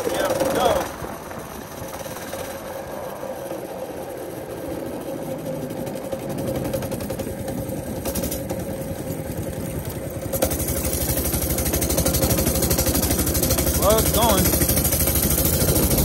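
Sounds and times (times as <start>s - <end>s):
small engine running: 0.0s - 16.0s.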